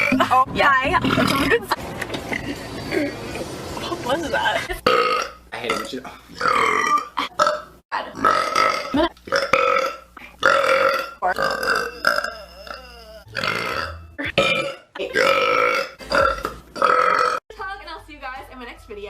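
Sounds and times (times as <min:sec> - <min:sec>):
woman burping: 0:01.0 - 0:01.7, 0:04.8 - 0:17.4.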